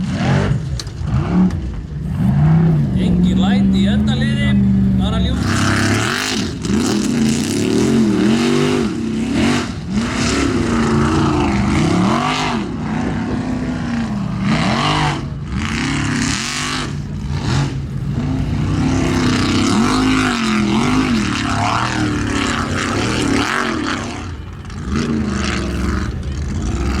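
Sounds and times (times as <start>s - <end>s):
buggy engine revving hard: 0.0s - 27.0s.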